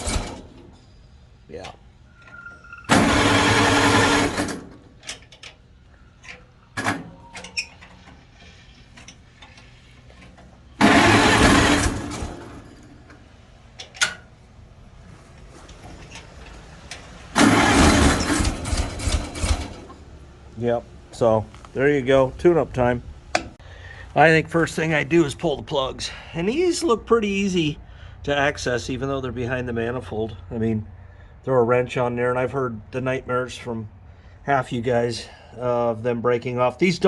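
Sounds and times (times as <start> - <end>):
engine cranking without starting: 0.0 - 0.8, 2.2 - 14.2, 15.7 - 20.1.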